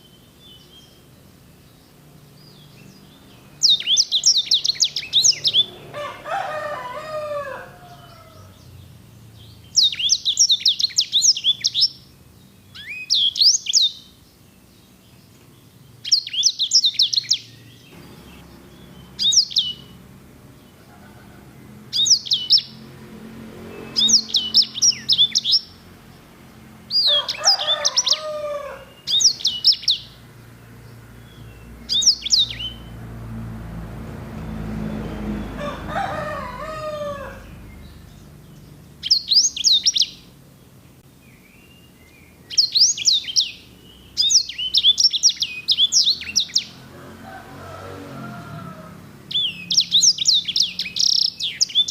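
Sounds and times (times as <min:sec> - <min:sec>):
canary singing trills and whistles: 0:00.0 - 0:05.9, 0:09.4 - 0:20.1, 0:21.8 - 0:22.9, 0:23.7 - 0:25.9, 0:26.9 - 0:30.2, 0:31.2 - 0:33.0, 0:37.4 - 0:40.4, 0:41.3 - 0:46.8, 0:49.3 - 0:51.9.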